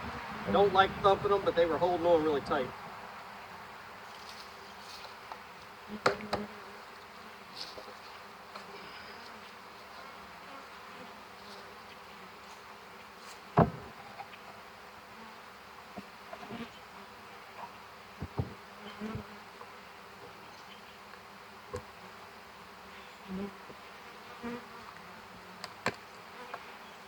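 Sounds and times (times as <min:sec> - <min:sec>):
bees buzzing: 0:00.0 - 0:27.0
sharp knocks: 0:13.6 - 0:14.0, 0:18.2 - 0:19.2.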